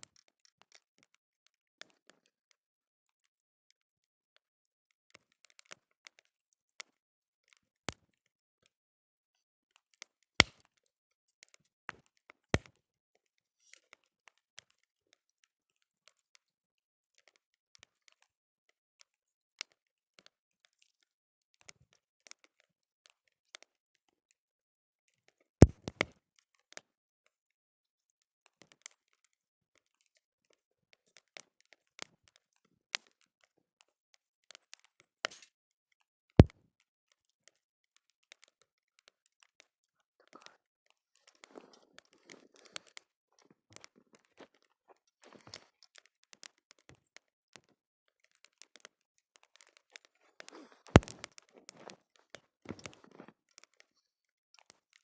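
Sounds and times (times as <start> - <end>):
sharp fire pops: 25.6 - 26.1, 50.8 - 51.3
campfire crackling: 50.4 - 52.0.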